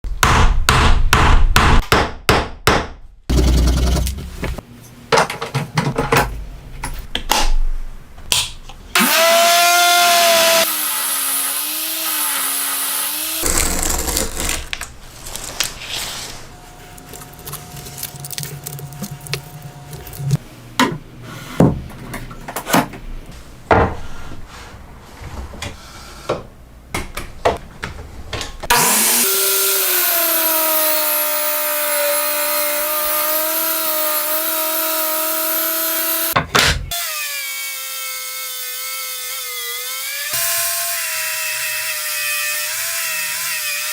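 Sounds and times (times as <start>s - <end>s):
power tool motor whining: 9.0s - 13.6s.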